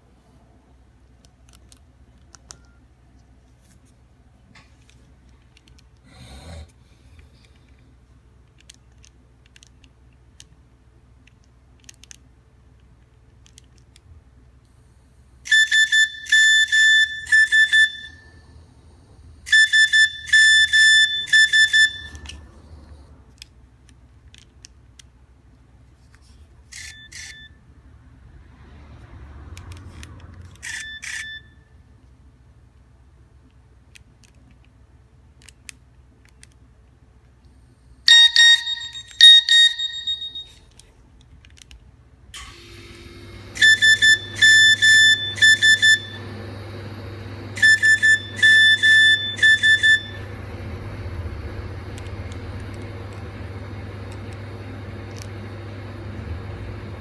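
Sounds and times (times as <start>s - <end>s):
phone ringtone beeps: 30.6s - 31.6s, 38.1s - 40.5s.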